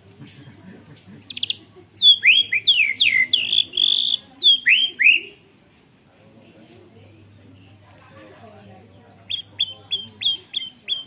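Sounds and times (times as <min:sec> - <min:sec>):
bird singing trills and whistles: 0:00.6 - 0:05.4, 0:09.1 - 0:11.0.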